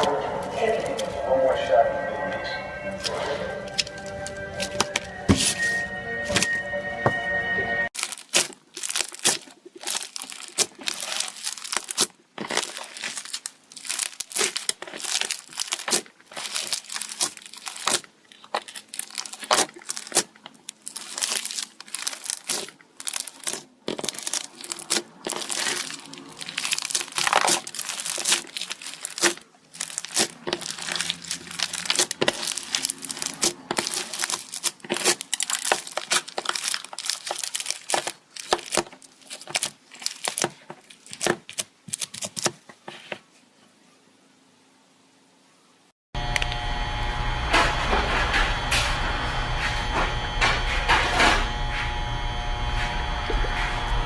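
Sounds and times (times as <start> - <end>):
slime crackling and popping: 8.0 - 42.6.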